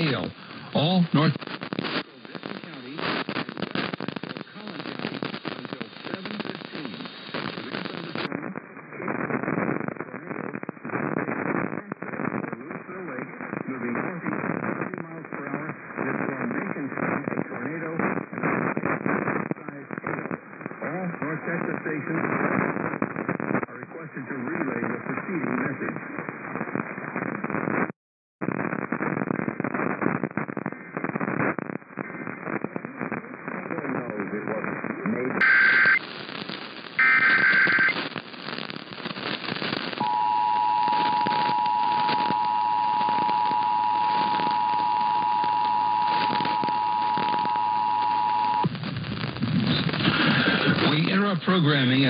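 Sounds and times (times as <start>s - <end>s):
garbled voice on radio: 0.0s - 26.6s, 32.1s - 36.4s, 42.9s - 48.6s, 49.6s - 52.0s
radio static crackling: 0.0s - 52.0s.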